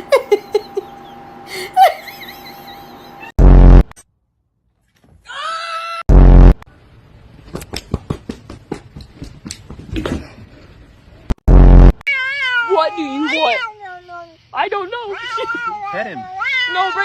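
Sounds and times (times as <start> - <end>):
loud low blast: 6.1 - 6.6
cat meowing: 12.1 - 14.0, 15.1 - 17.0.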